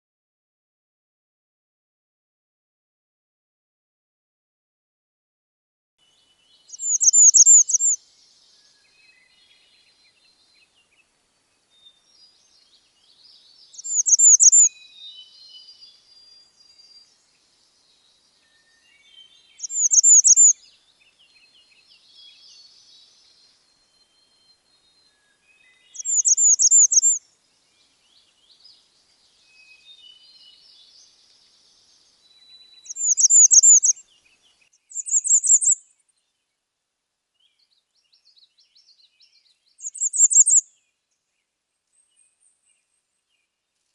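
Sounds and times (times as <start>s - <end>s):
faint chirps of other birds: 6.0s - 43.9s
high-pitched squeaky birdsong: 6.8s - 8.0s, 13.8s - 14.7s, 19.6s - 20.5s, 26.0s - 27.2s, 32.9s - 34.0s, 34.9s - 35.8s, 39.8s - 40.6s.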